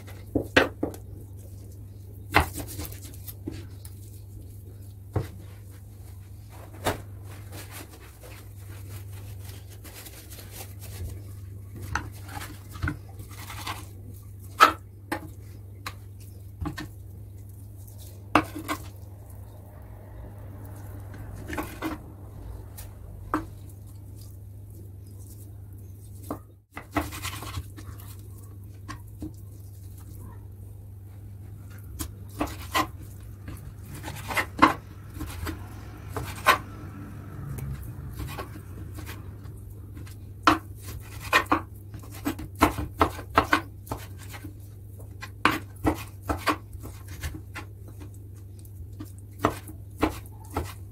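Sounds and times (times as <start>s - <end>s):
low hum: 16.2s - 26.1s.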